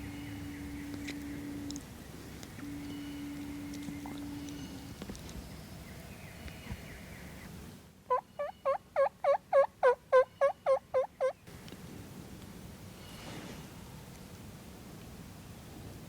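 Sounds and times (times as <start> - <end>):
turkey yelps: 8.1 - 11.4.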